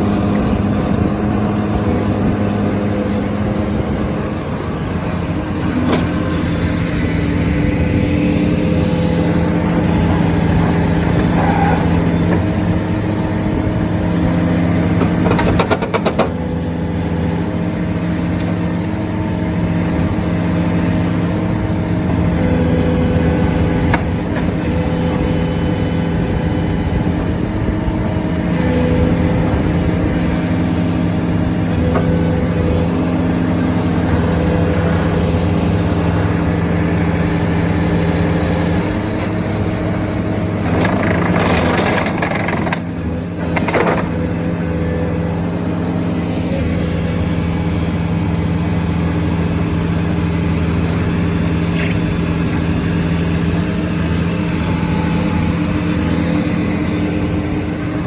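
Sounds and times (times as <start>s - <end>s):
heavy excavator drone: 0.0s - 58.0s
rattle of knocks: 15.0s - 16.5s, 40.6s - 44.4s.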